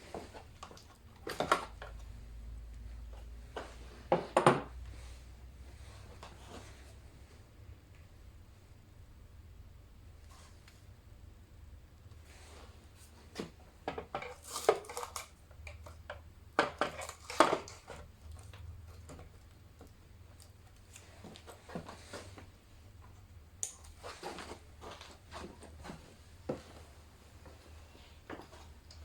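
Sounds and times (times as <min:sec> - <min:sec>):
objects clattering on table: 0:03.6 - 0:04.8.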